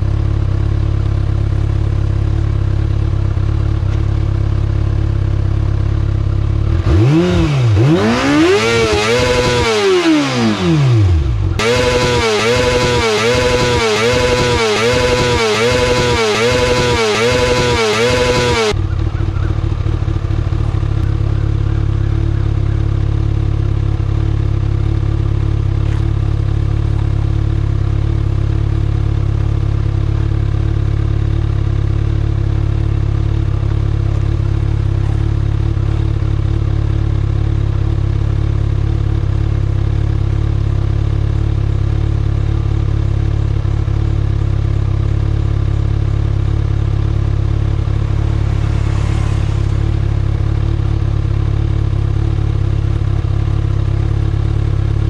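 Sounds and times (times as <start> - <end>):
motorcycle engine at rev limiter: 0.0 - 55.0
motorcycle engine idling: 0.0 - 55.0.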